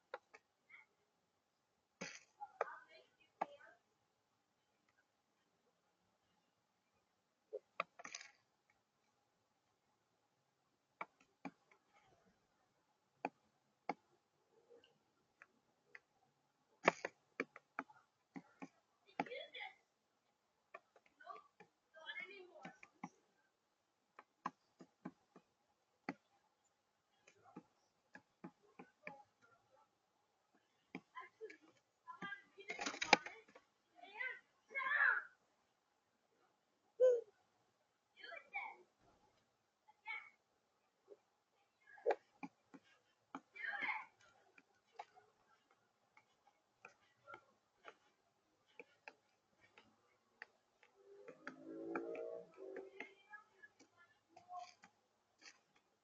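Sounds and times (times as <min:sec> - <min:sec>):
faint light clicks and taps: 0:42.0 - 0:56.0
dove taps and clicks: 0:48.7 - 0:55.0.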